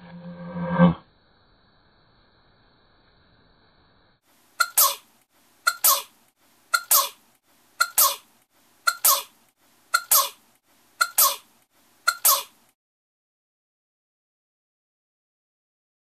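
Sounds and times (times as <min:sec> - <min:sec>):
person sneezing: 0:10.1 - 0:10.4, 0:11.1 - 0:11.4, 0:12.2 - 0:12.5.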